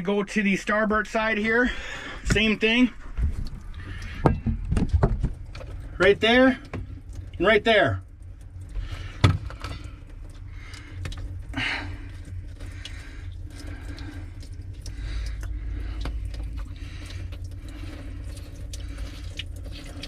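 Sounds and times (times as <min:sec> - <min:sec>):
low rumble: 0:00.0 - 0:19.8.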